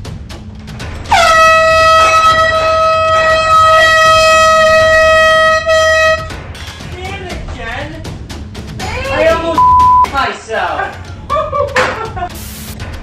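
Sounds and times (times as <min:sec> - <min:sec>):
air horn blasting: 0:01.1 - 0:06.3.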